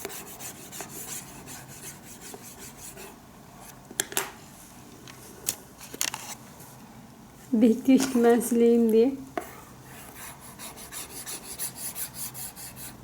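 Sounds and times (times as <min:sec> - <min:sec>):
scratchy rubbing on hard surface: 0:09.9 - 0:13.0.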